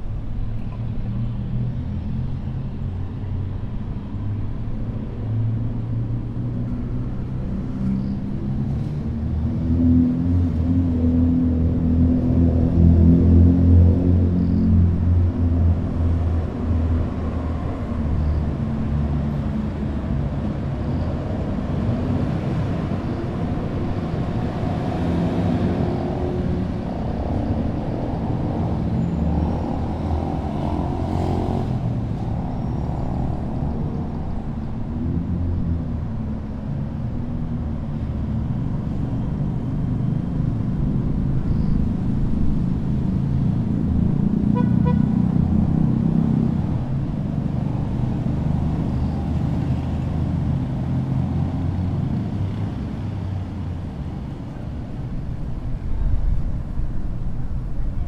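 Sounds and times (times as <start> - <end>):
city street traffic rumble: 0.0 - 58.0.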